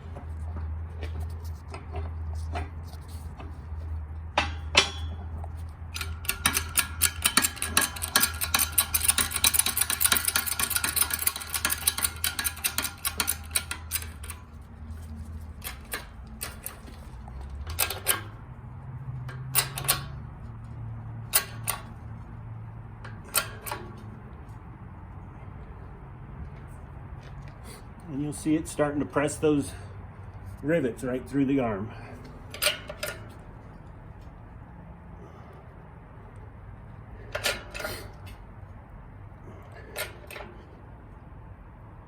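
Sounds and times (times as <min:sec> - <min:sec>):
metallic clicking and ticking: 0:04.3 - 0:18.4, 0:21.3 - 0:22.0.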